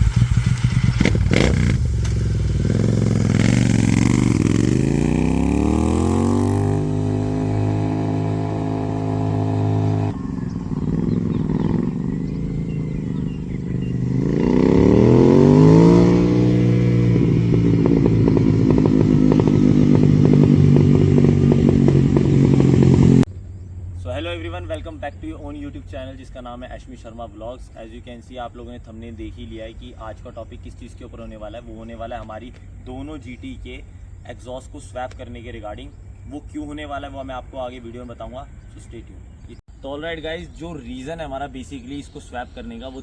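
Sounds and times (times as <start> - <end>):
motorcycle engine revving: 0.0 - 24.1.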